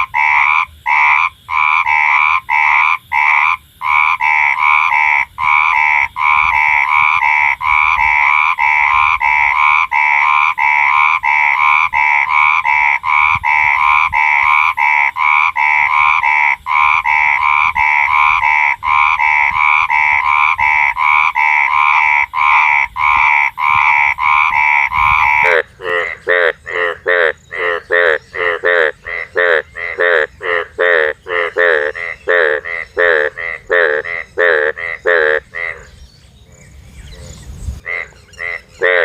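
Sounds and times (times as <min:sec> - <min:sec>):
frogs croaking: 0:00.0 - 0:39.0.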